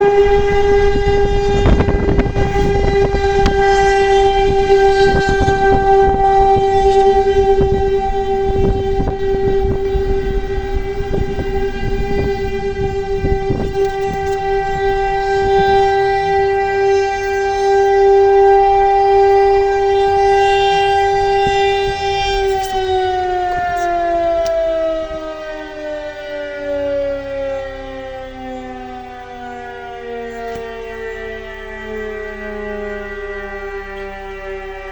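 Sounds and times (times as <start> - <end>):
low thuds and rumble: 0.0 - 25.6
civil defence siren steady tone: 0.0 - 34.9.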